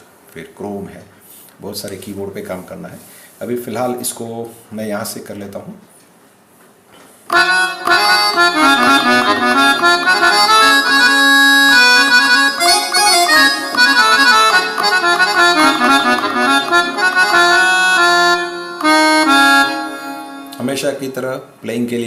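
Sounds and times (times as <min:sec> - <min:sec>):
synthesizer harmonium melody: 0:07.3 - 0:21.2.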